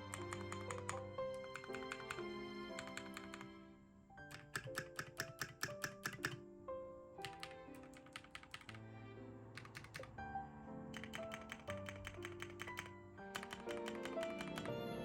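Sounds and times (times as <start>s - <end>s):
mechanical keyboard clicks: 0.0s - 3.6s, 4.2s - 6.4s, 7.2s - 8.8s, 9.6s - 10.2s, 10.9s - 14.8s
soft background music: 0.0s - 15.0s.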